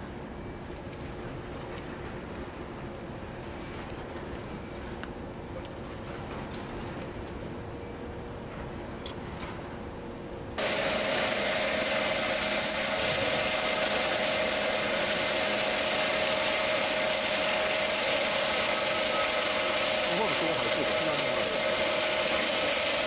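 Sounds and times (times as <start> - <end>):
machinery humming: 10.0 - 23.0.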